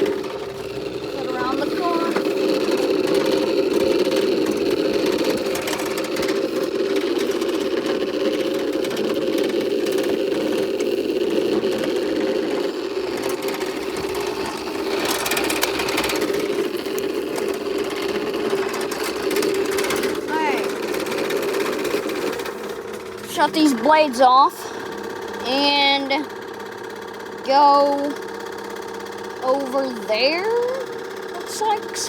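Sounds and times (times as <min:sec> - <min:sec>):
lawnmower engine running: 0:00.0 - 0:32.0.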